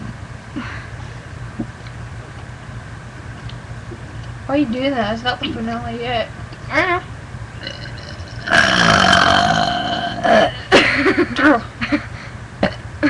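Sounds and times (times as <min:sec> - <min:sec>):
girl burping loudly: 0:07.6 - 0:10.7.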